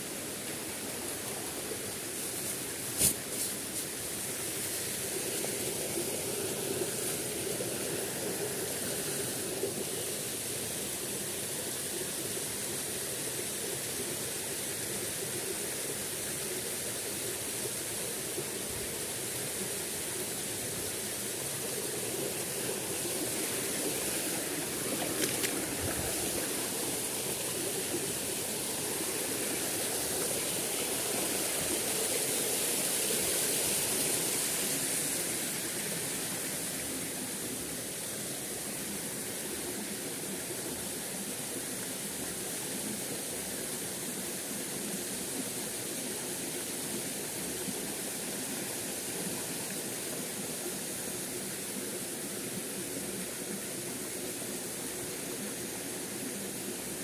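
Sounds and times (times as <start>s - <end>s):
stream flowing over rocks: 0.0s - 57.0s.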